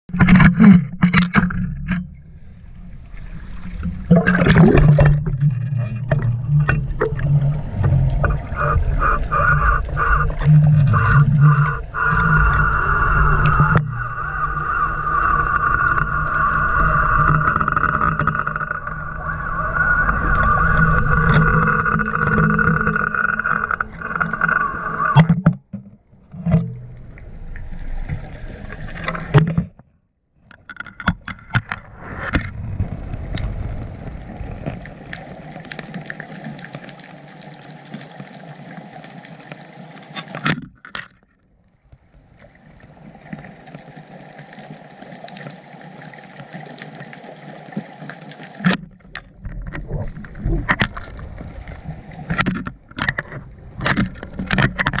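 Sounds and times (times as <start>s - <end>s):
boat motor humming: 0.8s - 29.4s
muffled watery hiss: 2.2s - 25.3s, 31.7s - 40.6s, 42.1s - 48.8s.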